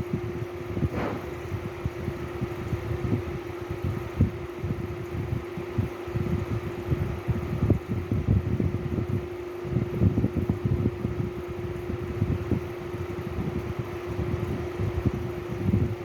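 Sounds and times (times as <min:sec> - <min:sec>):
steady mechanical hum: 0:00.0 - 0:16.0
low thumps and rumbling: 0:00.7 - 0:01.8.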